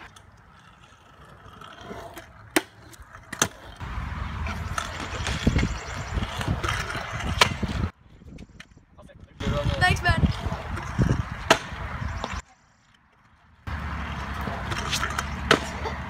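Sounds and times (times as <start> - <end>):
scooter wheels rolling on concrete: 0.0 - 16.0
scooter deck clacks: 14.1 - 16.0.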